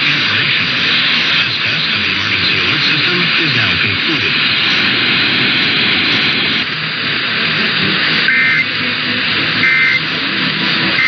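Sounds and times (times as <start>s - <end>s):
steady radio hiss: 0.0s - 11.0s
two-tone digital chirps: 8.3s - 8.7s, 9.6s - 10.0s.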